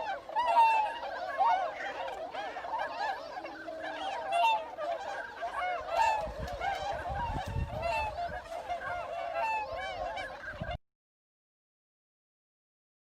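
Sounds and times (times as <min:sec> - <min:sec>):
geese honking: 0:00.0 - 0:10.8.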